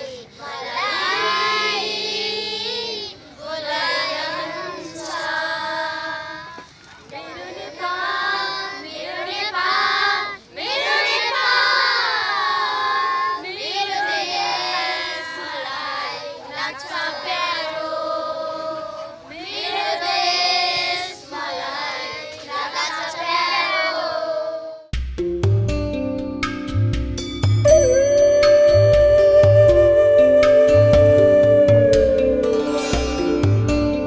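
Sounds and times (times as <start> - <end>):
children singing together: 0.0 - 24.8.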